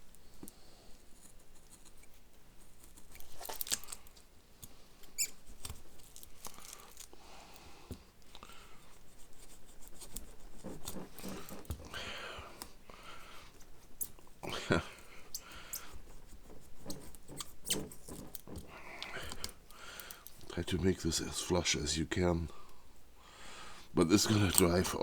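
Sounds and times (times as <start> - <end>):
clicks and scrapes of cutting: 0.2 - 12.8, 13.5 - 20.6.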